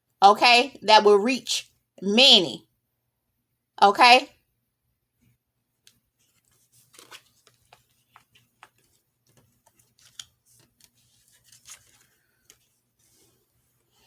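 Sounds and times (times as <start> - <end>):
cards rustling and clicking: 5.8 - 14.0.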